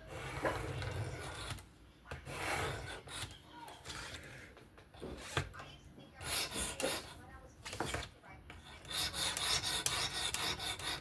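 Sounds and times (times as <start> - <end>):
sharpening stone rasping on knife: 8.8 - 11.0.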